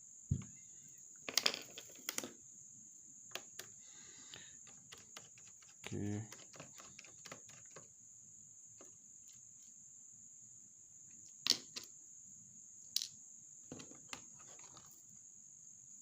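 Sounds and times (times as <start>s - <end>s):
small tools clicking on plastic: 3.3s - 7.9s.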